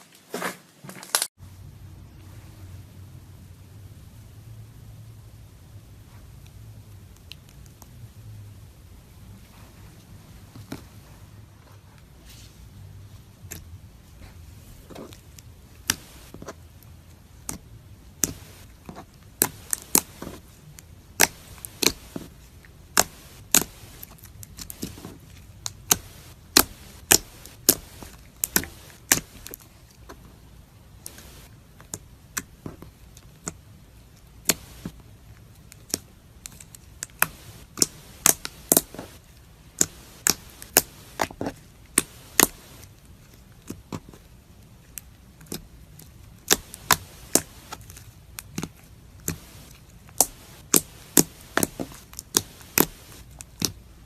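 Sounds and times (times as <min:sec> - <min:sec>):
crunchy slime clicking: 0:18.2 - 0:22.3, 0:22.9 - 0:29.7, 0:34.2 - 0:44.2, 0:44.9 - 0:53.8.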